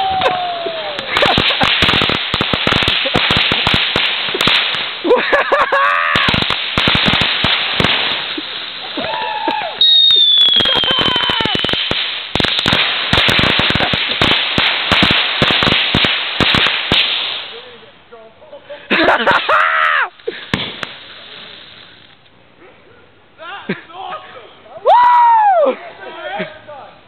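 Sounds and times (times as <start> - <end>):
firecrackers going off: 0.0 - 17.8, 18.9 - 22.3
whistle falling in pitch: 9.8 - 10.8.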